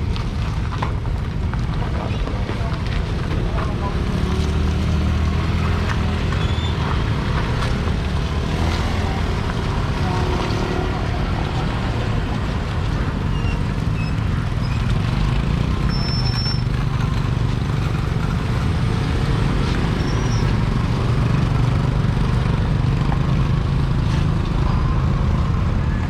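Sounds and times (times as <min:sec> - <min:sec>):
ferry engine droning: 0:02.6 - 0:26.0.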